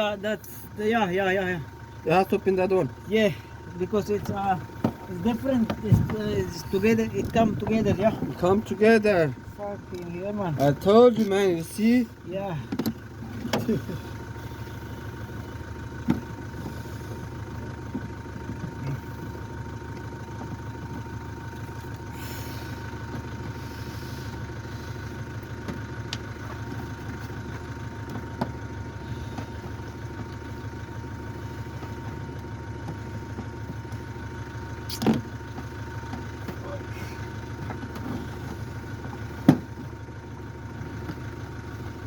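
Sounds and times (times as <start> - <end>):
machine hum: 3.4 - 34.6.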